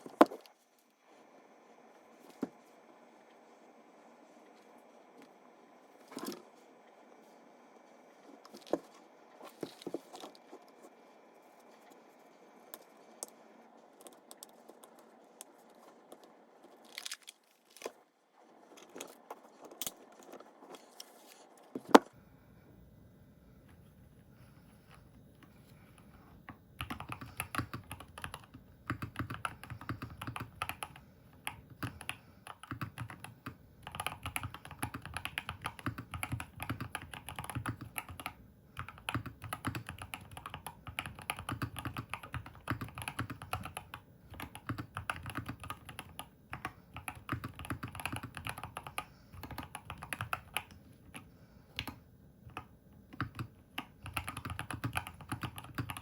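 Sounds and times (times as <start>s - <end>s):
fast typing on keyboard: 26.8s - 56.0s.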